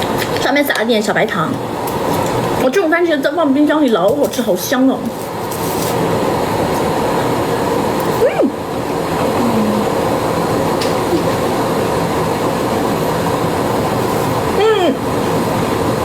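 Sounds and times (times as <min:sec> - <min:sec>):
machine whirring hum: 0:00.0 - 0:16.0
short gliding vocal-like sound: 0:09.2 - 0:10.0.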